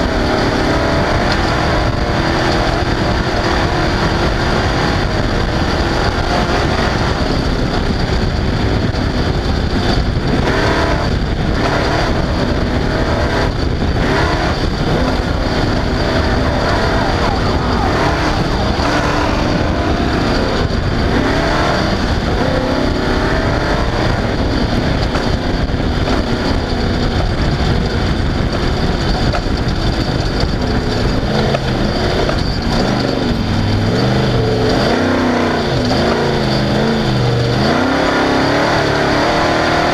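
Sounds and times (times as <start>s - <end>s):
race car engine revving: 0.0s - 39.9s.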